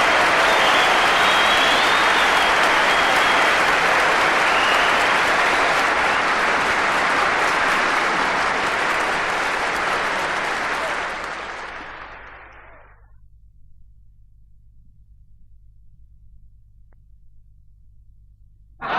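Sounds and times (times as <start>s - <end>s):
large crowd applauding: 0.0s - 13.0s.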